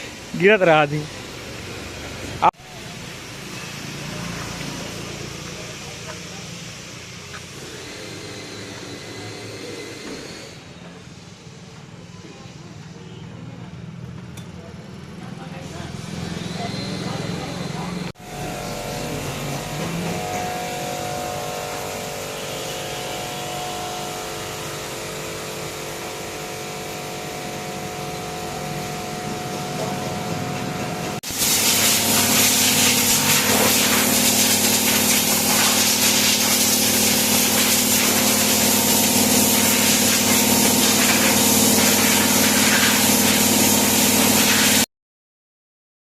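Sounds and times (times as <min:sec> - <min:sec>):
machine hum with hiss: 0:00.0 - 0:13.3, 0:16.0 - 0:44.9
motorcycle engine running: 0:15.9 - 0:31.2, 0:31.9 - 0:44.5.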